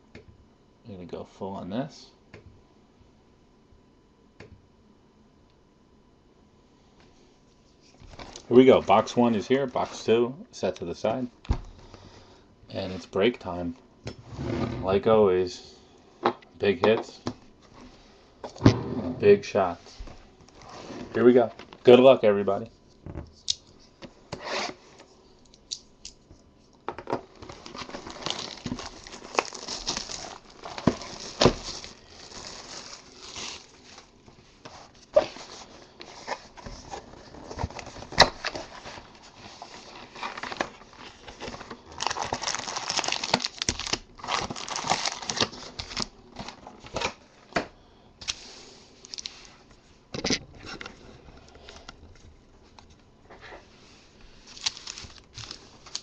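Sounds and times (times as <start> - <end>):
plastic wrapping tearing and crinkling: 27.2 - 34.2, 37.0 - 47.2, 54.4 - 56.0.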